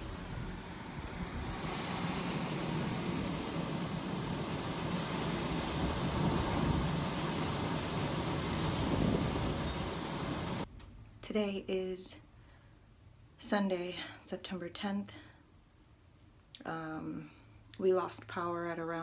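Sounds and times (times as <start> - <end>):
hurricane wind rushing: 0.0 - 10.7.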